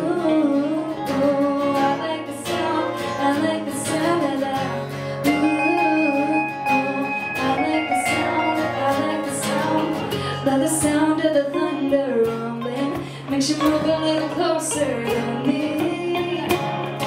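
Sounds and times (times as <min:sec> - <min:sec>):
acoustic guitar strumming: 0:00.0 - 0:17.0
wavering melody line: 0:05.3 - 0:10.0.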